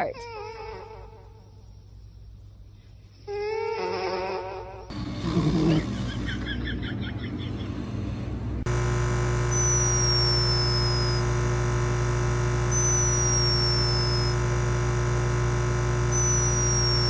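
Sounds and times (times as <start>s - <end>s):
electrical hum: 4.6s - 17.0s
animal snoring with whistle: 4.9s - 6.0s.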